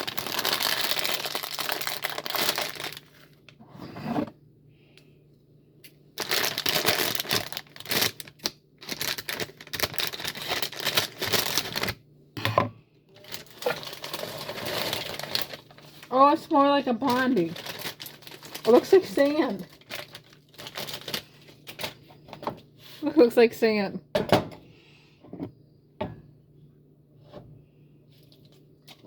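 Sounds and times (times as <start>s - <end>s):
plastic packet crinkling and tearing: 0.0s - 3.5s, 6.2s - 12.0s, 13.2s - 22.1s.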